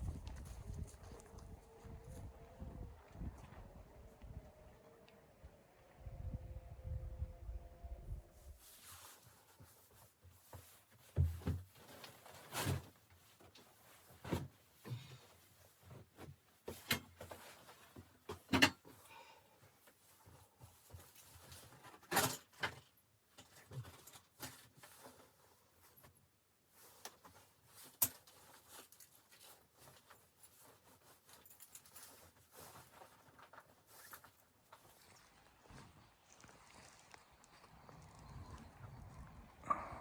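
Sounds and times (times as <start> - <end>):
camping gear knocking and rustling: 0.0 - 2.3, 8.7 - 36.1.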